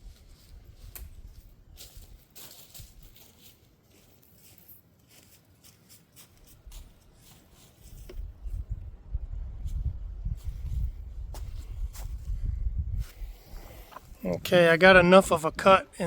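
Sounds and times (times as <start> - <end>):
light ticks and rustles: 0.1 - 8.6
wind buffeting microphone: 7.8 - 15.7.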